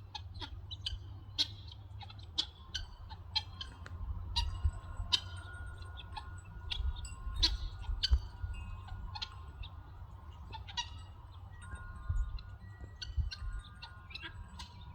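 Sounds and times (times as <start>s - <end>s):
guinea fowl harsh calls: 0.1s - 11.3s
faint steady ringing tones: 2.6s - 14.9s.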